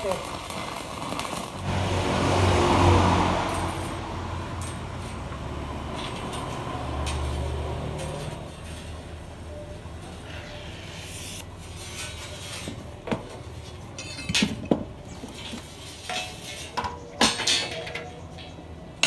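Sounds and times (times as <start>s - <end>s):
scraping on metal: 10.0s - 18.6s.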